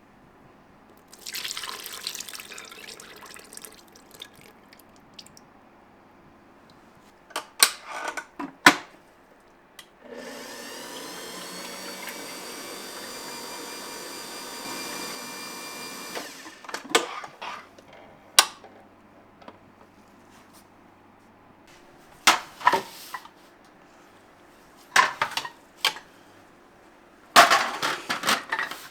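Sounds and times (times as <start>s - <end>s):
small electric motor running: 10.2s - 16.3s.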